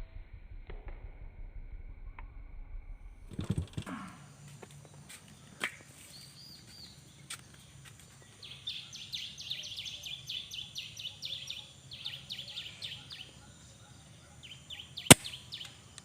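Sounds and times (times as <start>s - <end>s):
small bird chirping: 3.4s - 16.0s.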